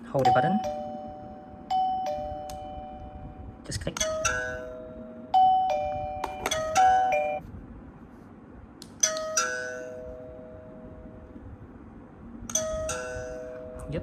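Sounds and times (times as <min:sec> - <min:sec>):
doorbell ding-dong chime: 0:00.1 - 0:07.4
doorbell button click: 0:00.2 - 0:03.2, 0:04.0 - 0:07.4.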